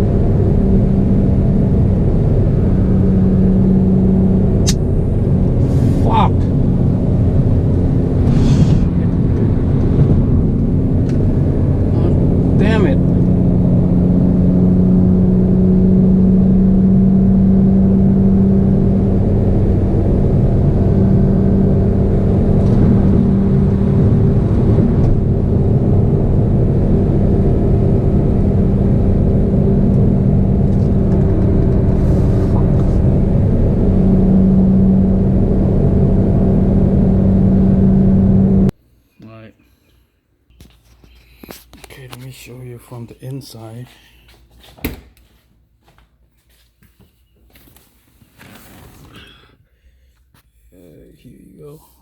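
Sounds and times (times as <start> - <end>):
car engine drone: 0.0 - 38.8
road and wind rumble: 0.0 - 38.8.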